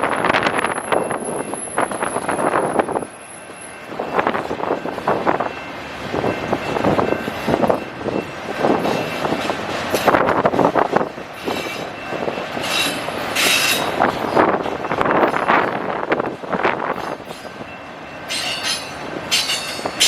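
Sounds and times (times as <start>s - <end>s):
train wheels clattering on track: 0.0s - 20.0s
high wheel squeal: 11.4s - 14.1s.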